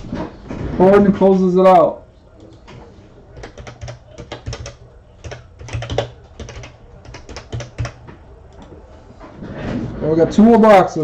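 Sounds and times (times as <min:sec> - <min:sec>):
typing on computer keyboard: 0:03.4 - 0:08.7.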